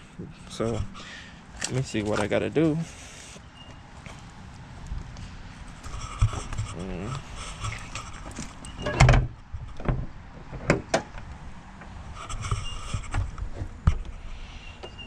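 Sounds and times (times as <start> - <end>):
handling knocks and clicks: 1.6 - 2.4.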